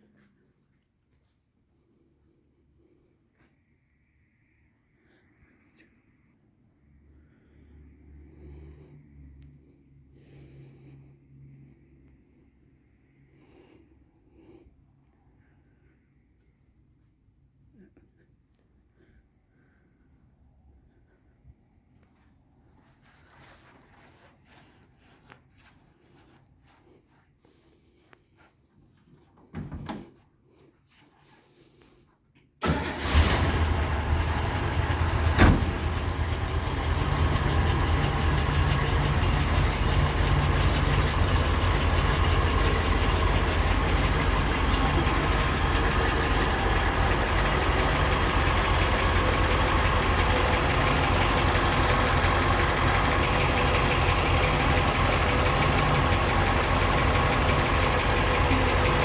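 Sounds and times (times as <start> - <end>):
car engine starting and idling: 32.6 - 59.0.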